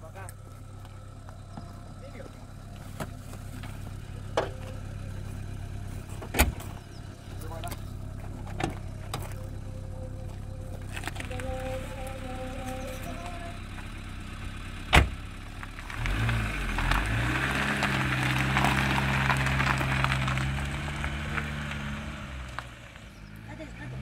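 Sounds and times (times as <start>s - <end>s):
motor humming: 0.2s - 15.2s.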